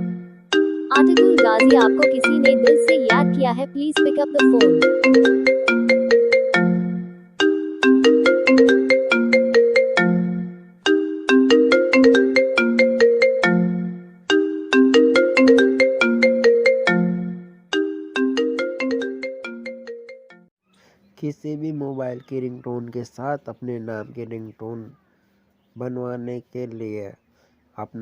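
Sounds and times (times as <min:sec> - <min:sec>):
mobile phone ringtone melody: 0:00.0 - 0:20.5.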